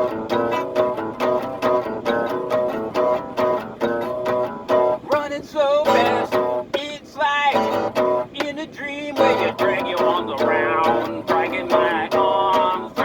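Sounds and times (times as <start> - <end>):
acoustic guitar strumming: 0.0 - 13.0
person singing: 5.1 - 13.0.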